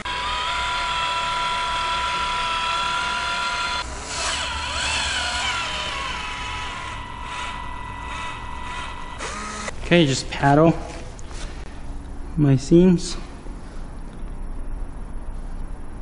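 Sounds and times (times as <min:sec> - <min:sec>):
caulking gun motor whining: 0:00.0 - 0:09.8.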